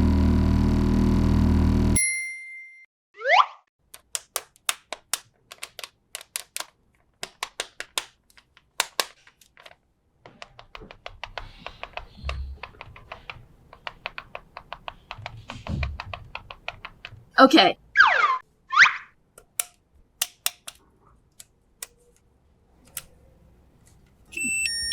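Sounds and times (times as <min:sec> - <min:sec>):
plastic toy pieces clicking: 0:03.9 - 0:17.2, 0:19.4 - 0:20.8.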